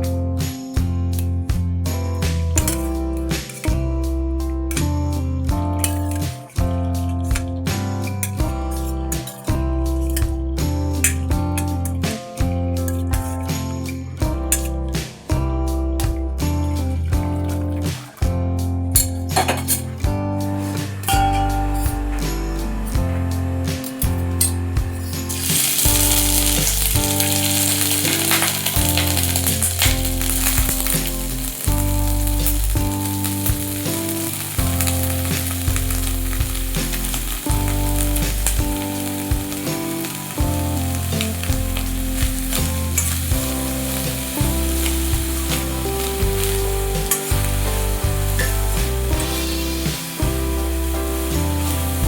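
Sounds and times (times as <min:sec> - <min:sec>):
broccoli sizzling in hot oil: 0:22.7 - 0:52.0.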